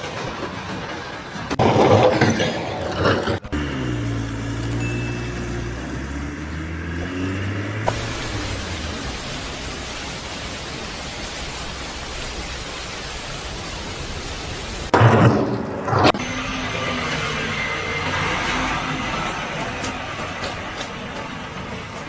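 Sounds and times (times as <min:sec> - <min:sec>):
steady hiss: 0:07.9 - 0:14.9.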